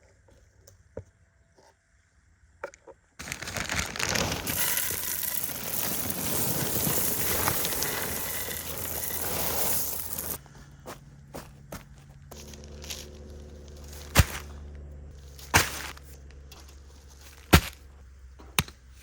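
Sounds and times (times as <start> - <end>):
gravel pouring: 3.2 - 10.4, 12.3 - 17.8.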